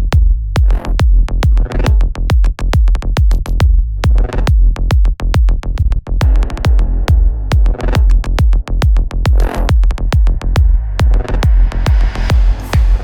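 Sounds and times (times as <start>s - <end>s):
electronic dance music: 11.1s - 13.0s.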